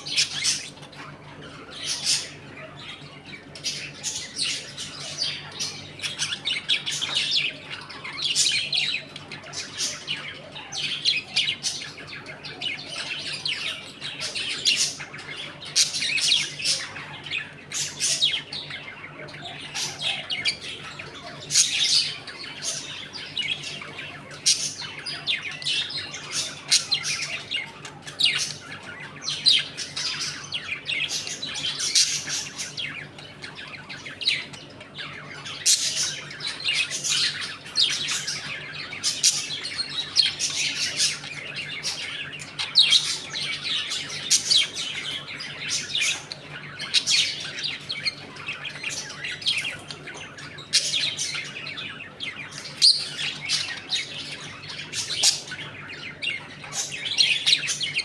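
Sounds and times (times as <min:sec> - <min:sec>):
budgerigars chattering: 0:00.0 - 0:58.0.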